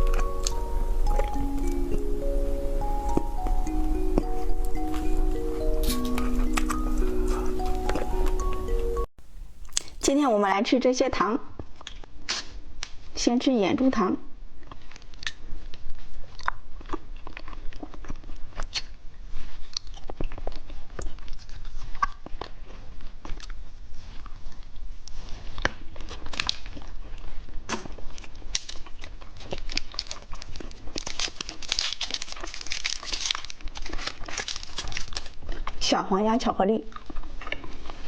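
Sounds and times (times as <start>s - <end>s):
plastic wrapper crinkling: 29.4s - 35.7s.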